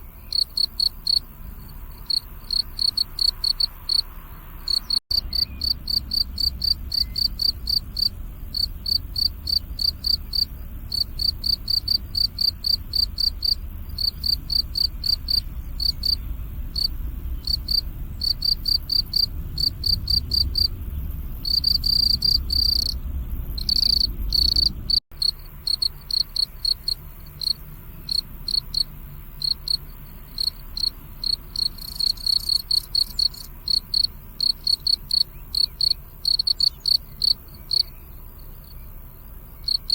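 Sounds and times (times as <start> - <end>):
crickets chirping: 0.0 - 39.9
low rumble: 3.8 - 26.1.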